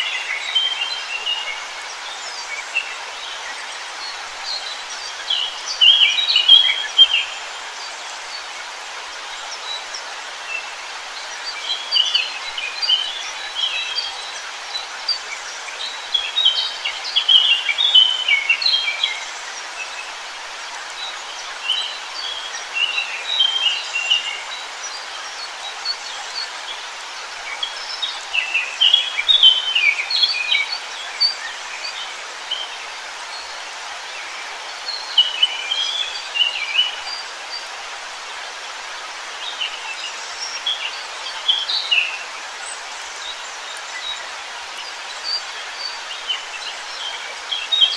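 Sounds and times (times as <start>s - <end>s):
rushing hiss of forest ambience: 0.0s - 47.9s
songbirds chirping and singing: 27.6s - 32.6s.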